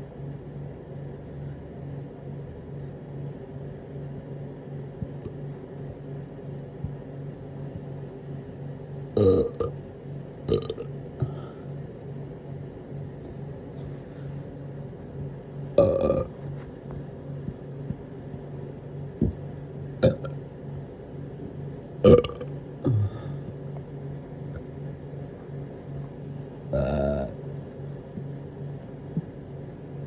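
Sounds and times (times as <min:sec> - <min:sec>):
person burping: 0:09.2 - 0:09.7, 0:10.5 - 0:11.5, 0:15.8 - 0:16.4, 0:20.0 - 0:20.3, 0:22.0 - 0:23.4, 0:26.7 - 0:27.4.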